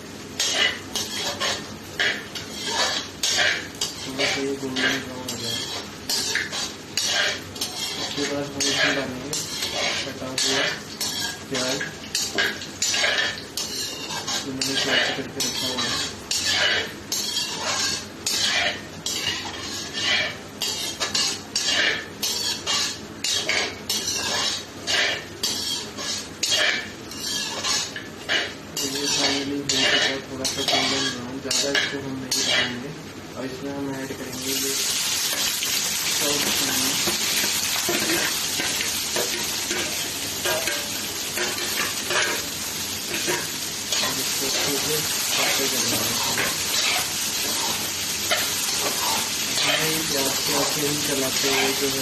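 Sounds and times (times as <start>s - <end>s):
spices frying in hot oil: 0.0s - 52.0s
spoon scraping and stirring pan: 0.4s - 32.8s, 34.3s - 52.0s.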